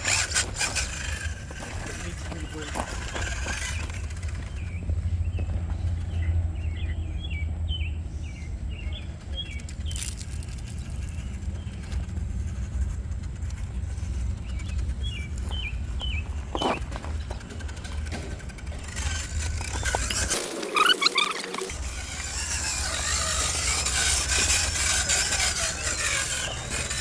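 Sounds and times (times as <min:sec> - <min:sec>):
steady low rumble: 0:00.0 - 0:20.4
songbird chirping: 0:13.5 - 0:18.0.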